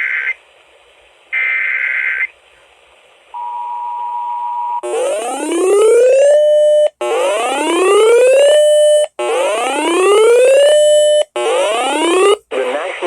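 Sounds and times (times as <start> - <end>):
electronic whooping siren: 4.8 - 12.4.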